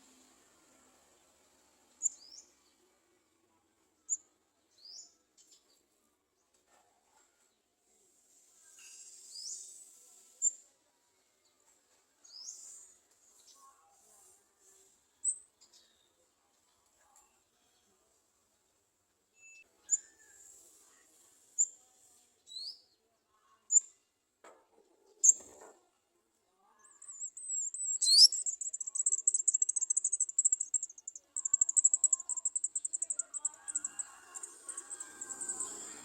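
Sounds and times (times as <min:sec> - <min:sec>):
bird chirping and trilling: 0:27.0 - 0:36.0.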